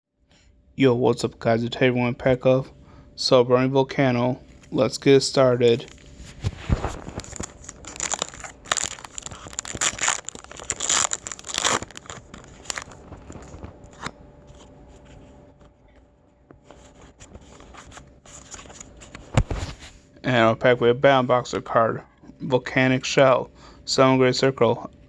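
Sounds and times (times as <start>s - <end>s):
cards rustling and clicking: 5.8s - 14.7s, 16.8s - 19.3s
foil pack tearing and crinkling: 6.6s - 14.0s.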